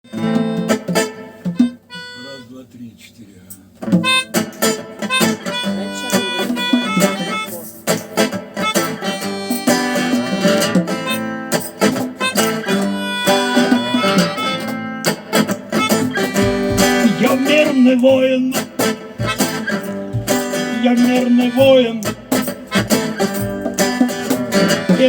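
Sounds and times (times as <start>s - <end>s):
acoustic guitar strumming: 0.0s - 25.0s
harmonica playing held notes: 0.1s - 2.8s, 3.9s - 25.0s.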